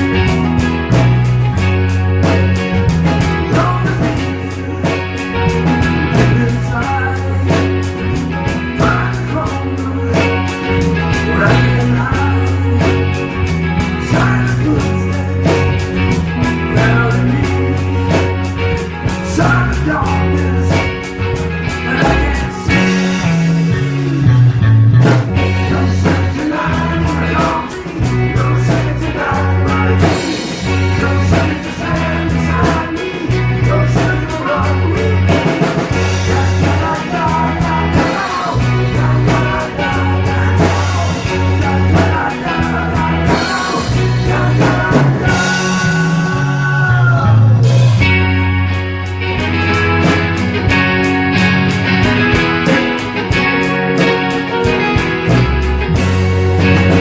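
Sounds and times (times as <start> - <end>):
person singing: 0.0 - 48.2, 52.0 - 57.0
bass line: 0.0 - 57.0
drums: 0.0 - 57.0.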